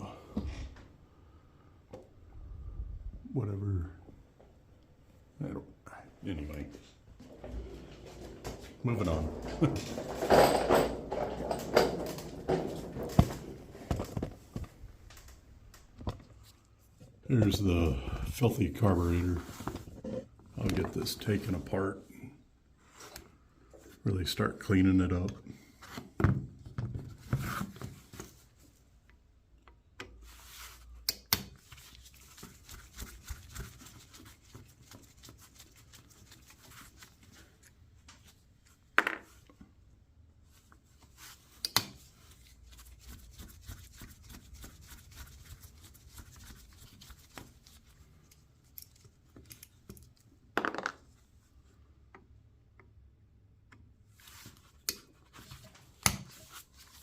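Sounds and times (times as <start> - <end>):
metal parts rubbing: 7.6 - 13.2.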